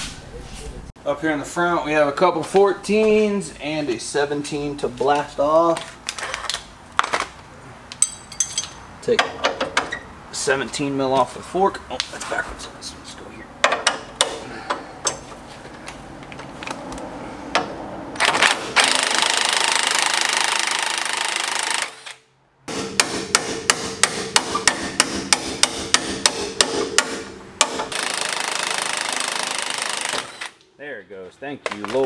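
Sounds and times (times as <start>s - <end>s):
impact wrench hammering: 8.0s - 10.0s, 13.6s - 15.3s, 17.6s - 22.0s, 22.7s - 30.6s.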